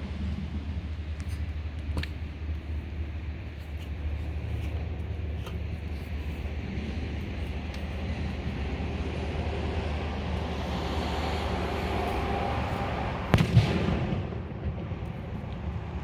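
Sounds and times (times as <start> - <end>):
steady low rumble: 0.0 - 16.0
fireworks bangs: 13.3 - 15.8.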